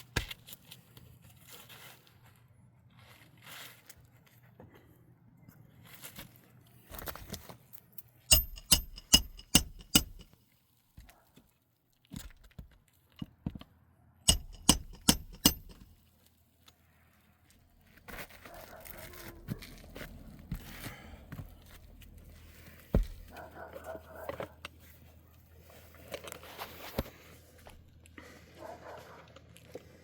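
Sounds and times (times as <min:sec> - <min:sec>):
handling and scraping noises: 0:00.0 - 0:10.3, 0:14.3 - 0:30.0
sharp ringing metal taps: 0:08.3 - 0:10.3, 0:14.3 - 0:15.9.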